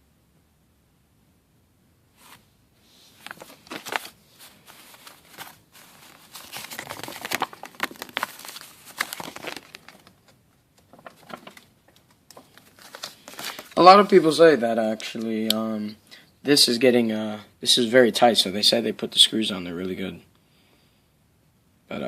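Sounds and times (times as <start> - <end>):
packaging crinkling: 3.2 - 14.3.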